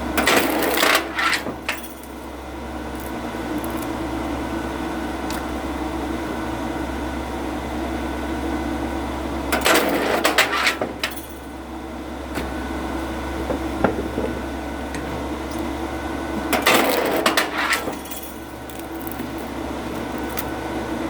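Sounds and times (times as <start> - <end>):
machine hum: 0.0 - 21.0
wood cracking and splitting: 18.6 - 20.6.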